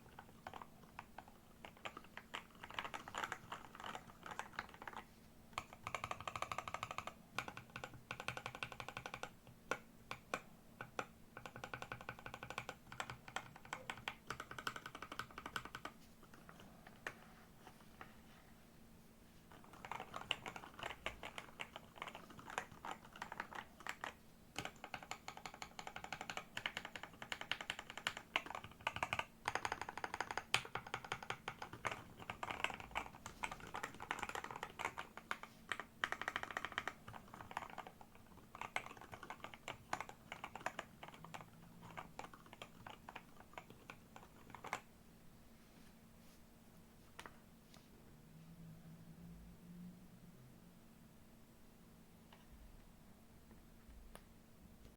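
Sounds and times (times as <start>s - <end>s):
mechanical keyboard typing: 0.0s - 5.0s, 5.6s - 17.2s, 19.5s - 44.9s.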